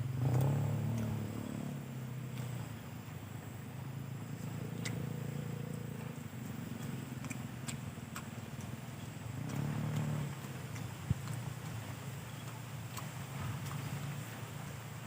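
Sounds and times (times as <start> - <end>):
low steady hum: 0.0 - 15.0
chewing with wet mouth clicks: 0.2 - 15.0.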